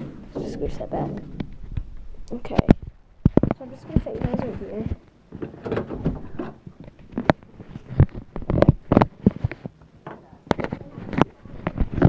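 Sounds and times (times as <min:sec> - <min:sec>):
plastic toys knocking and rustling: 0:02.5 - 0:12.0.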